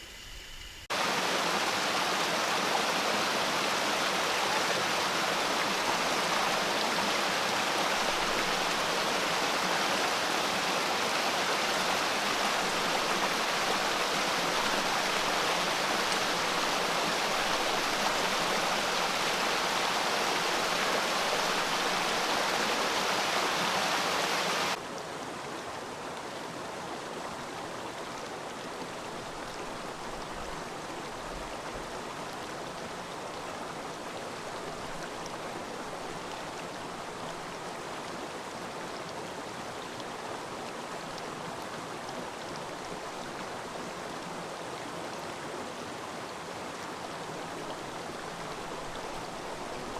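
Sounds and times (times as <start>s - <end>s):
water rushing over rocks: 0.9s - 24.8s.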